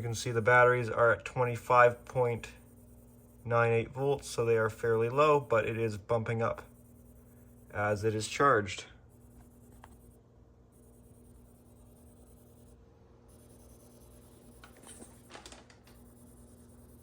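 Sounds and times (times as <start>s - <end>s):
faint electrical hum: 0.0s - 17.0s
handling rustles and clicks: 14.6s - 16.0s.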